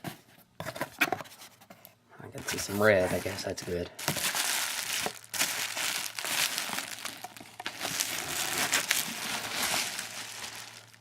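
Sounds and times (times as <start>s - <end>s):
packing material crinkling: 2.4s - 11.0s.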